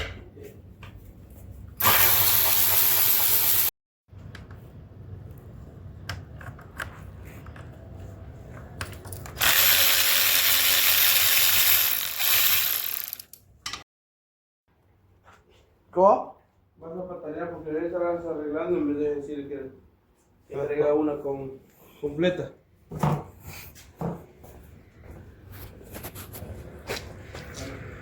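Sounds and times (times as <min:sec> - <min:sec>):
power ratchet whirring: 0:01.8 - 0:03.7, 0:09.4 - 0:13.4.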